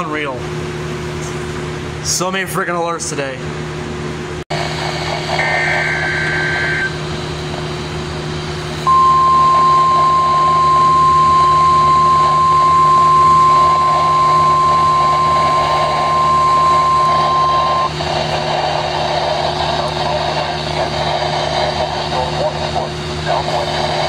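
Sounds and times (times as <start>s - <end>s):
steady high alarm tone: 5.4s - 7.0s, 8.8s - 18.0s.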